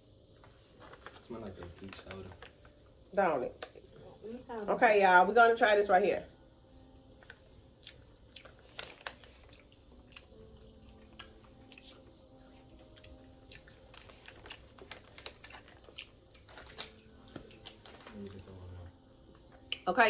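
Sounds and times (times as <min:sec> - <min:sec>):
people chewing: 0:07.1 - 0:19.8.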